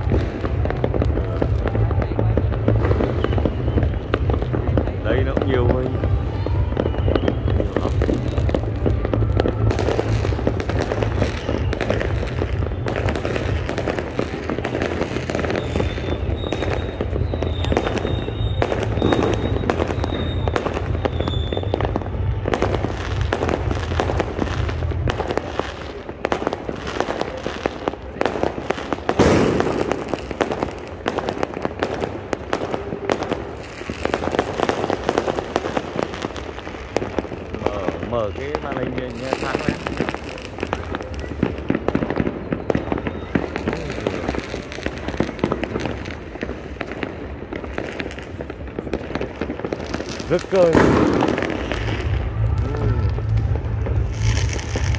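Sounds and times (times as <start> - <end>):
fireworks bangs and crackles: 0.0 - 54.9
faint high whistle: 6.6 - 8.4, 11.2 - 13.2, 15.5 - 22.0, 42.4 - 43.9
low rumble: 50.9 - 54.9.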